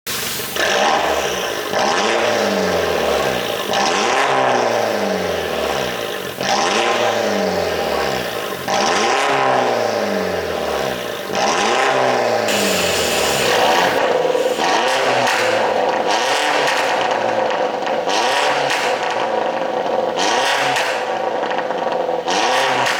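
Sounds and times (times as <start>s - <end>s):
car engine revving: 0.1s - 22.9s
exhaust crackling and popping: 0.1s - 22.9s.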